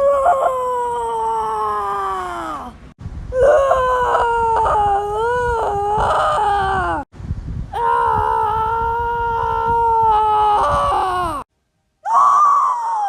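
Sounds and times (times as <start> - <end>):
long high-pitched screams: 12.0 - 13.0.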